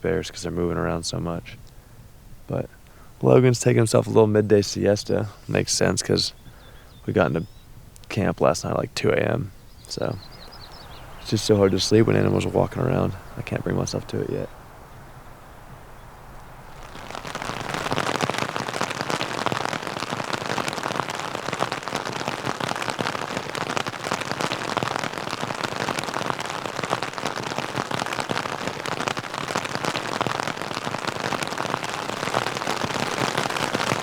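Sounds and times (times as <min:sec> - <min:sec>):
rain and hail pattering: 0:09.7 - 0:34.0.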